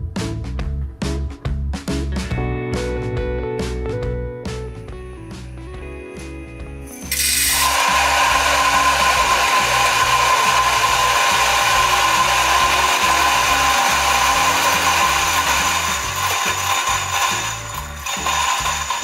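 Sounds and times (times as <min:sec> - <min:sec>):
coffee grinder whirring: 0:06.9 - 0:19.0.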